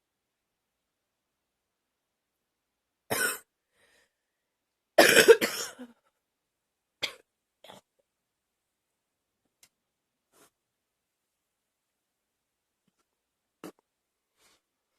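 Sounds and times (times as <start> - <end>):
girl coughing: 3.1 - 3.5, 5.0 - 6.0.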